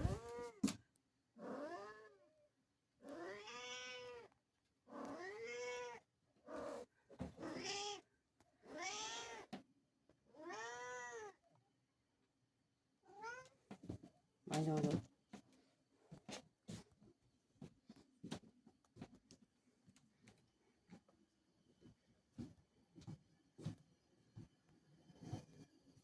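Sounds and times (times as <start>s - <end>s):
cat meowing: 3.1s - 4.3s, 8.7s - 9.5s, 10.4s - 11.4s.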